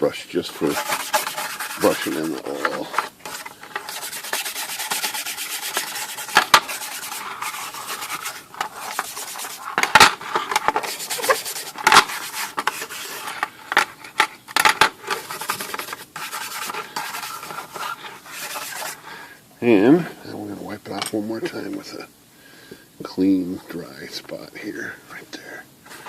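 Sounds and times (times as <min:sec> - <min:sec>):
brush scrubbing metal: 0:00.4 - 0:14.1, 0:15.0 - 0:19.0.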